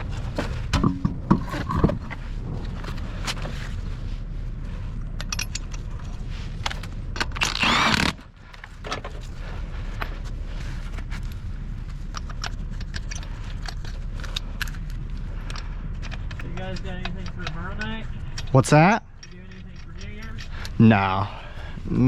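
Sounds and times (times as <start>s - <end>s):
clicks and scrapes at valve stem: 10.0s - 20.8s.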